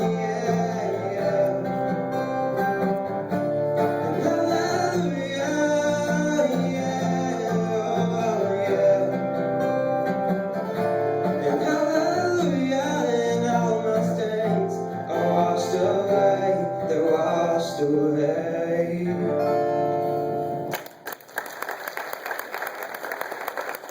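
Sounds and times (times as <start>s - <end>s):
man singing with guitar: 0.0s - 20.6s
congregation applause: 20.7s - 23.9s.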